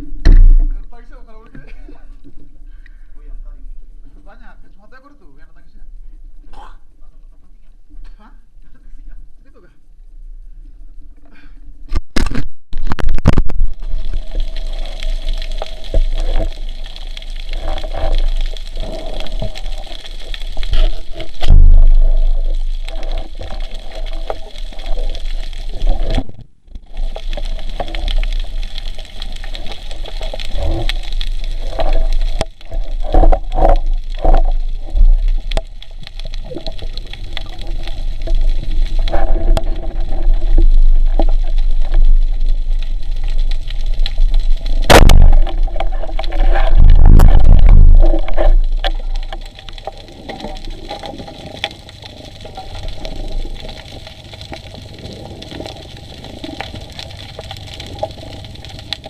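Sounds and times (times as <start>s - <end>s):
water sloshing and gurgling: 11.9s - 59.0s
continuous low rumble: 13.4s - 59.0s.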